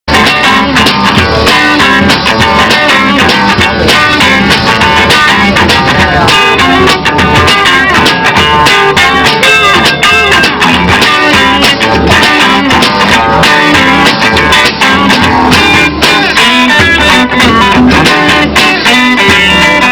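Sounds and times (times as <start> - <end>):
instrumental guitar band music: 0.1 - 19.9.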